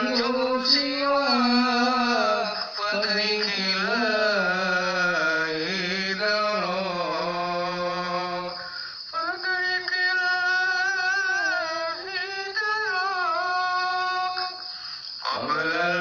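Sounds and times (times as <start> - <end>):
man singing low: 0.0 - 8.6, 15.2 - 16.0
high voice singing: 0.0 - 16.0.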